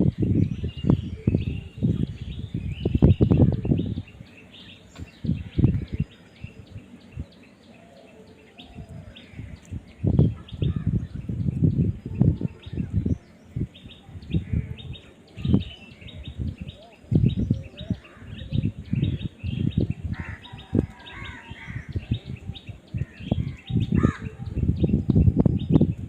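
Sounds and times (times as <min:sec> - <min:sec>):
birds chirping: 0:00.0 - 0:26.0.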